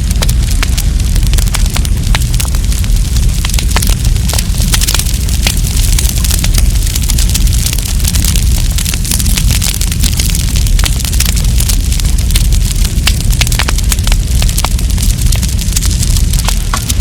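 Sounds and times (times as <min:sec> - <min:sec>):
campfire crackling and popping: 0:00.0 - 0:17.0
steady low rumble: 0:00.0 - 0:17.0.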